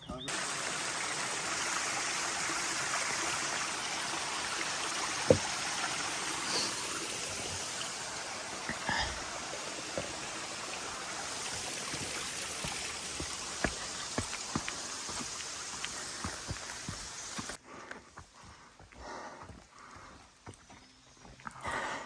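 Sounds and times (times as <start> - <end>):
creek water rushing: 0.0 - 17.6.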